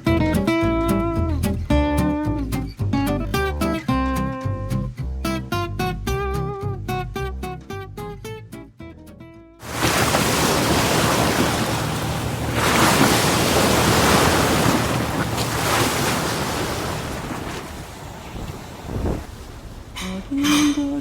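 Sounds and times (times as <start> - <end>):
sea waves breaking: 9.6 - 21.0
wind: 9.6 - 21.0.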